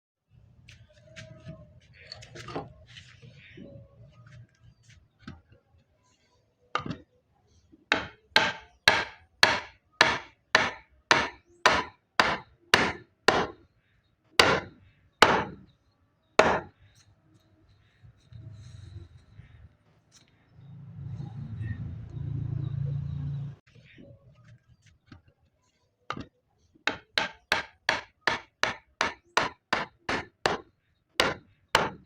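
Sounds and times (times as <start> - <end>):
hammer blows on wood: 7.9 - 13.6, 14.4 - 15.7, 16.4 - 16.7, 26.9 - 32.0.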